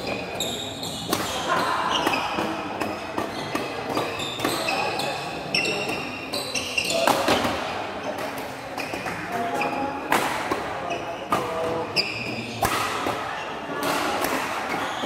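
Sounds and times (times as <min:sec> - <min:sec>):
short high shoe squeaks: 0:00.0 - 0:02.4, 0:03.3 - 0:07.2, 0:11.9 - 0:12.6, 0:14.8 - 0:15.0
racket striking shuttlecock: 0:11.3 - 0:14.9.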